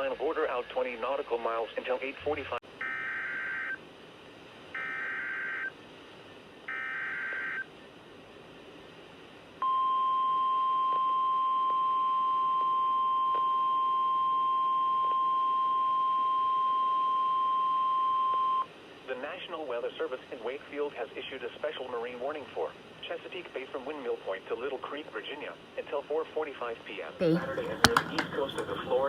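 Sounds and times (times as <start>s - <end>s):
loud steady high alarm tone: 2.8s - 3.8s, 4.8s - 5.7s, 6.7s - 7.7s.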